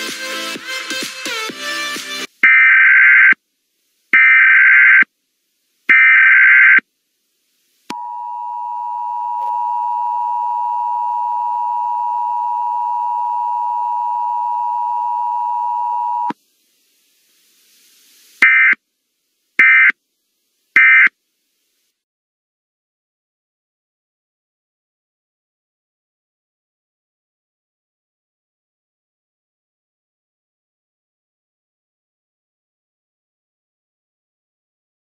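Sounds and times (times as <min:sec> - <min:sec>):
two-tone attention signal: 0:07.9 - 0:16.3
digital data bursts: 0:18.4 - 0:18.8, 0:19.6 - 0:20.0.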